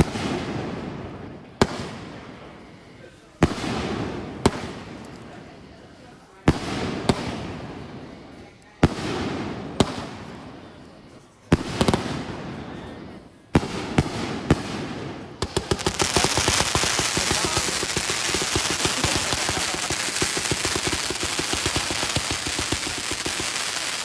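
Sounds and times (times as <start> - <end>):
fireworks bangs: 0.0 - 2.7, 3.4 - 5.5, 6.5 - 10.8, 11.5 - 24.0
firecrackers crackling: 0.0 - 24.0.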